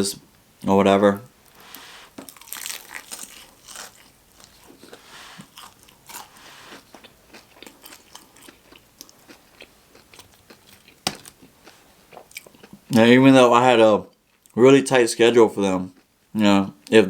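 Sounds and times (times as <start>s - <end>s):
person chewing crispy food: 1.5s - 13.0s.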